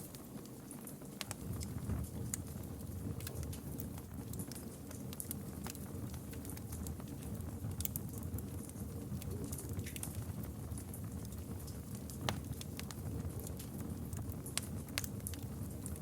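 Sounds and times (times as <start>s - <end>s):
campfire crackling and popping: 0.0s - 16.0s
low rumble of flames: 0.0s - 16.0s.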